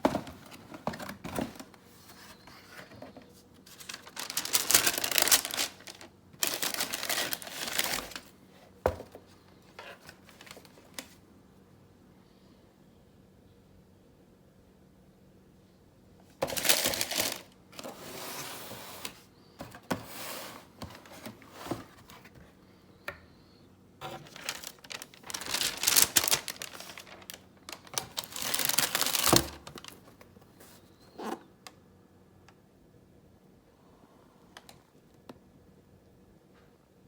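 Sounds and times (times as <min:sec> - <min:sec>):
paper rustling and crinkling: 0:00.0 - 0:11.2, 0:16.4 - 0:22.5, 0:24.0 - 0:31.4.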